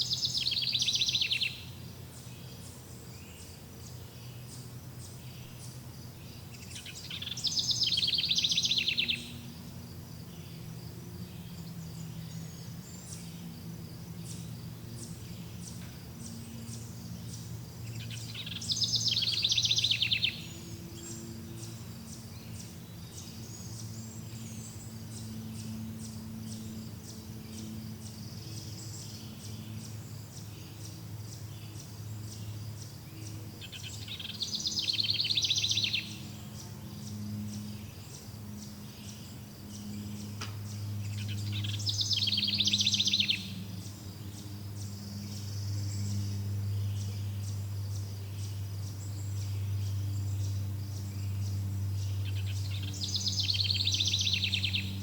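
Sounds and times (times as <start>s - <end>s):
insects chirping: 0.0s - 55.0s
low steady hum: 0.0s - 55.0s.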